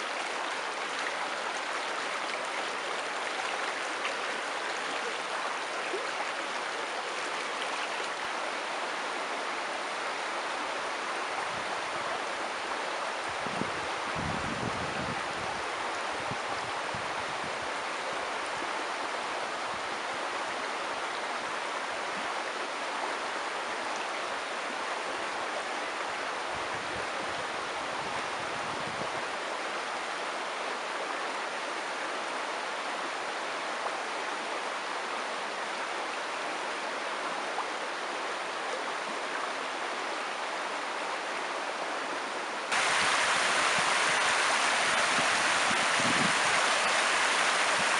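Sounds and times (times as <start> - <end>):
river water flowing: 0.0 - 47.9.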